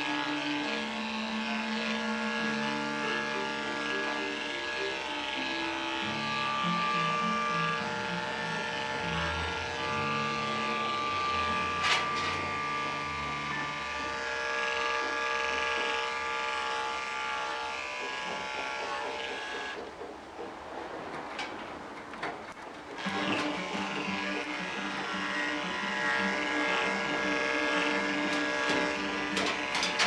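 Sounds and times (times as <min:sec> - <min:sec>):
electric clipper buzzing: 0:00.0 - 0:19.9, 0:23.0 - 0:30.0.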